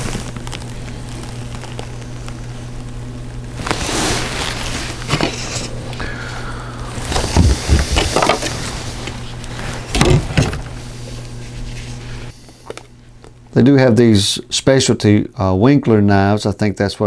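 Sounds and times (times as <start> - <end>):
steady low hum: 0.0 - 17.0
handling knocks and rustling: 3.6 - 6.0, 6.9 - 12.0.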